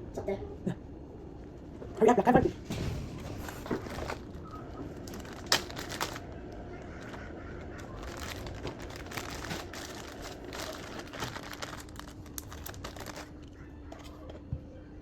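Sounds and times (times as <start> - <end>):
plastic bag crinkling: 3.2 - 14.1.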